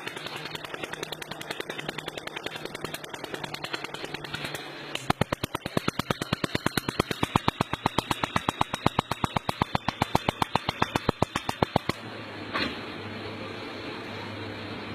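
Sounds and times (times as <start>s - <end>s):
laser welder clicking: 0.0s - 12.0s.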